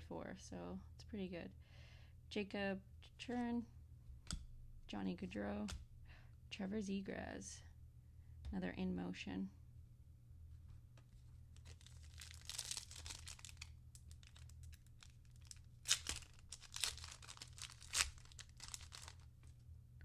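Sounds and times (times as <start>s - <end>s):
card pack wrapper crinkling: 11.5s - 19.6s
sharp wrapper crackles: 11.6s - 19.6s.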